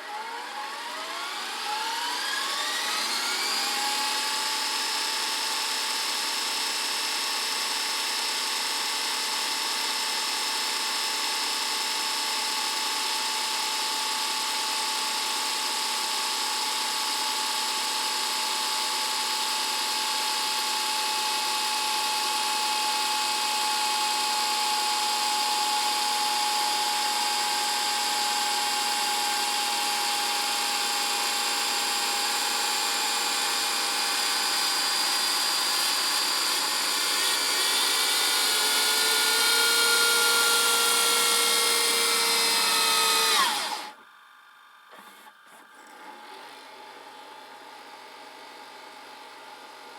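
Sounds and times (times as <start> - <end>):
tape motor whirring: 32.5 - 44.1, 44.9 - 47.0.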